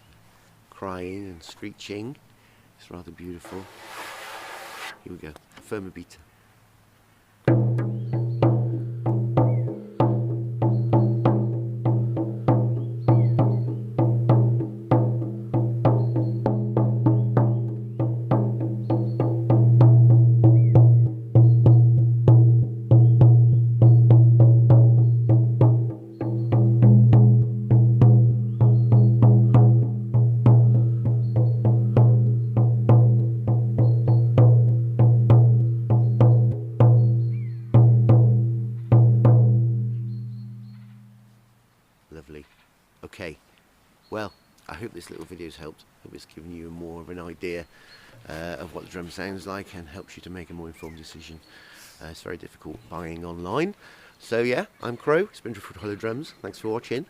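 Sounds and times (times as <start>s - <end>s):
frame drum beating: 7.5s - 41.1s.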